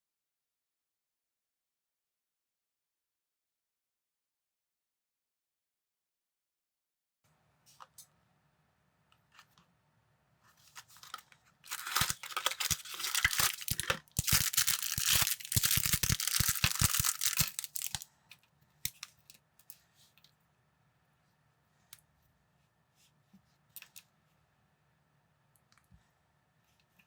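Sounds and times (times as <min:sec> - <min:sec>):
plastic packaging tearing and crinkling: 0:10.8 - 0:18.0
small plastic pieces clicking: 0:11.0 - 0:18.0, 0:18.9 - 0:19.3.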